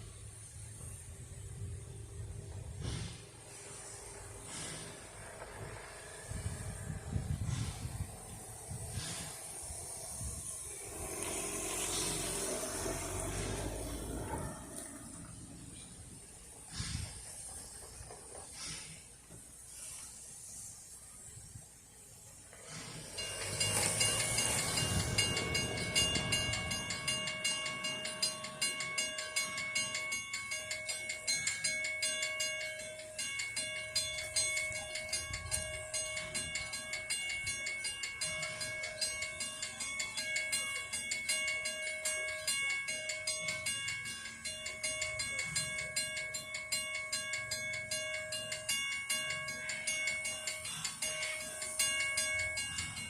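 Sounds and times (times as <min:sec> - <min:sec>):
train passing: 0:00.0 - 0:53.0
level crossing bell ringing: 0:23.0 - 0:53.0.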